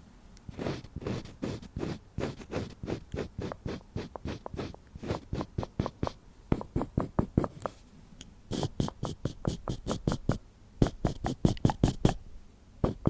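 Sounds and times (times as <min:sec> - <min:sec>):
eyeliner scratching strokes: 0:00.5 - 0:07.5, 0:08.5 - 0:10.2.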